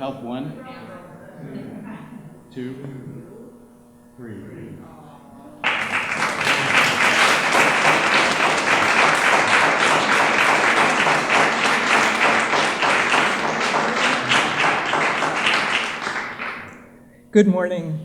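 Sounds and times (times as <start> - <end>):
audience applauding: 5.6 - 16.8.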